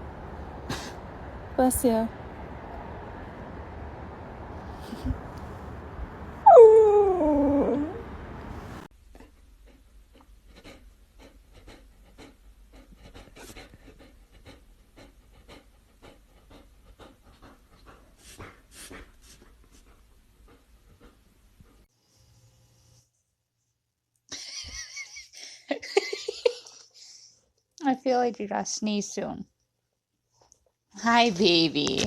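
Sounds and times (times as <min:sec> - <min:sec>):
dog whining: 0:06.4 - 0:08.1
dog panting: 0:09.2 - 0:21.9.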